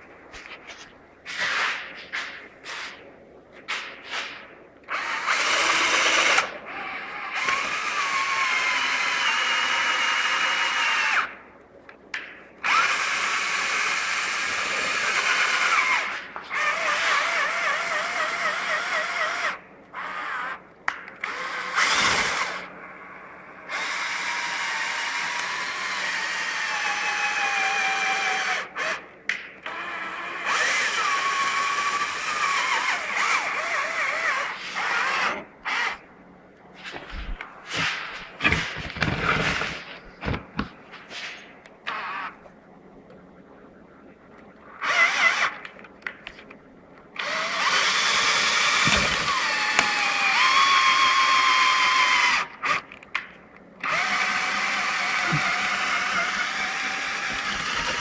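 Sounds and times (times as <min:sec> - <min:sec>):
small electric motors whining: 0:12.6 - 0:20.6, 0:44.8 - 0:45.7, 0:47.2 - 0:53.0, 0:53.8 - 0:58.0.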